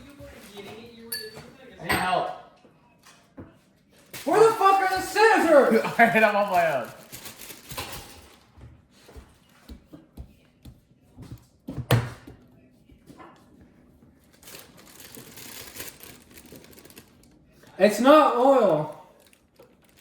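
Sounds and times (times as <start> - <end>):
packaging rustling: 4.0 - 8.5, 14.4 - 17.4, 18.6 - 20.0
kitchen items clicking and knocking: 4.2 - 8.6.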